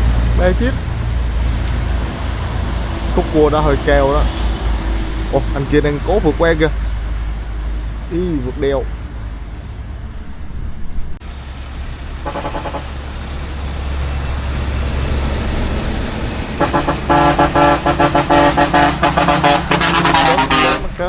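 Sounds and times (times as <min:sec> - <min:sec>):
truck engine rumbling: 0:00.0 - 0:21.0
truck horn blasts: 0:12.2 - 0:13.2, 0:16.4 - 0:21.0.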